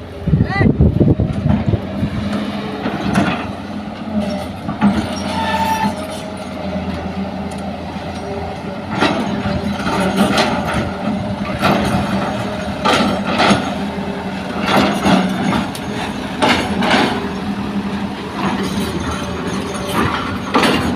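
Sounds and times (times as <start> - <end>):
excavator diesel engine running: 0.0 - 20.9
bucket clanking and scraping: 8.9 - 20.9.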